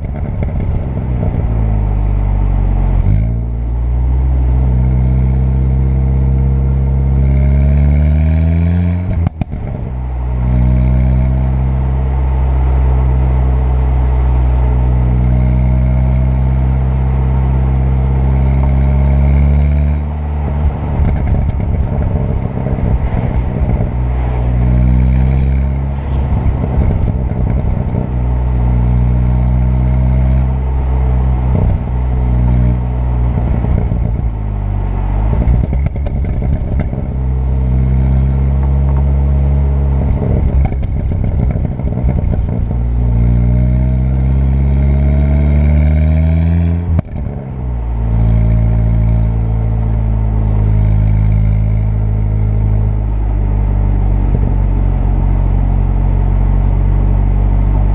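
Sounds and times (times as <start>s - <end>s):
exhaust crackling pops: 0.0s - 1.5s, 9.1s - 9.8s, 20.6s - 29.9s, 31.4s - 34.4s, 35.3s - 37.3s, 38.4s - 43.2s, 46.8s - 47.4s
car engine revving: 0.0s - 57.9s.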